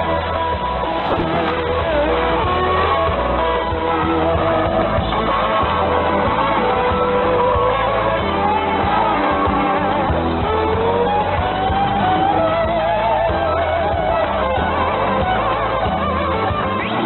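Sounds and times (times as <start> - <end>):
music over shortwave radio: 0.0 - 12.6.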